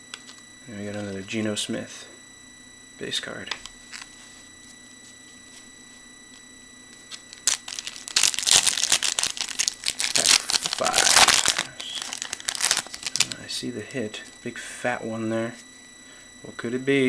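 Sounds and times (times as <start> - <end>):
wrapper tearing and crinkling: 7.3 - 13.4.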